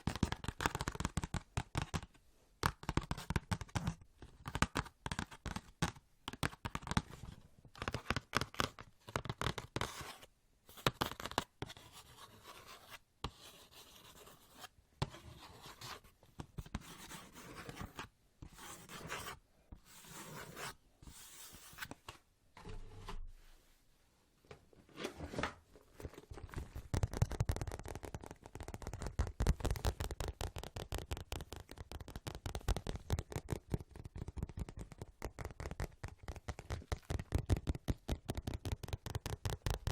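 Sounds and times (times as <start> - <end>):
fingertip scratching: 10.8 - 22.0.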